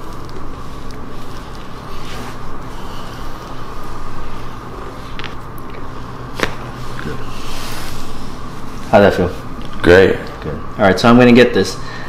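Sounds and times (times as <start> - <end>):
steady low hum: 0.0 - 12.0
neck joint cracking: 5.1 - 7.2.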